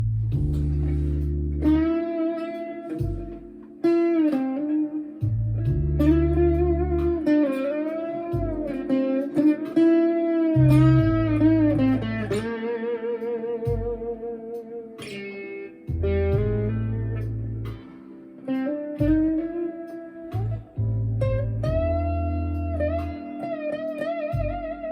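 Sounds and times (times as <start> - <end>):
deep low notes: 0.0 - 2.0, 5.2 - 7.2, 10.6 - 12.4, 15.9 - 17.8, 20.4 - 23.1
overdriven electric guitar lead: 0.8 - 24.9.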